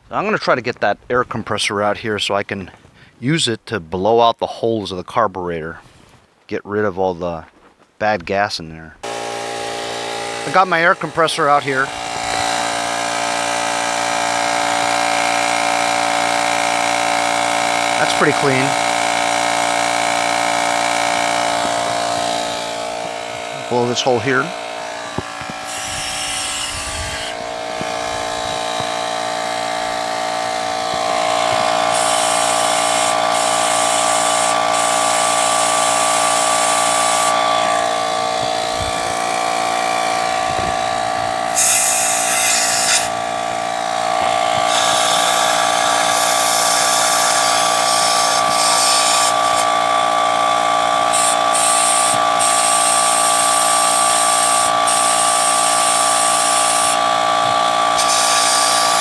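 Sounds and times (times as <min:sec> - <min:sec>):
air compressor humming: 0:09.0 - 0:59.0
compressed air bursts hissing: 0:25.2 - 0:49.8, 0:51.1 - 0:57.1, 0:57.9 - 0:59.0.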